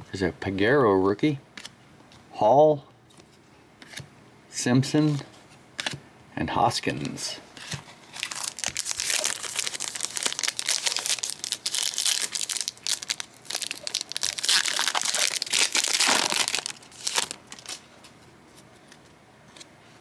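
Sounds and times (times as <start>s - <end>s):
plastic wrapper tearing and crinkling: 8.0s - 17.8s.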